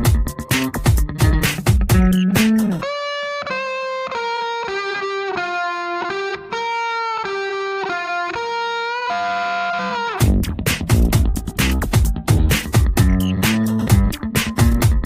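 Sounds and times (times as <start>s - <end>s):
dance-style beat: 0.0s - 2.8s, 10.2s - 15.0s.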